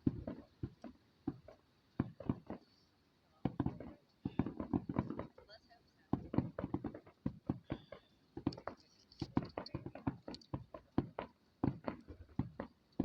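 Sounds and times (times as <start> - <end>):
fireworks popping and banging: 0.0 - 13.0.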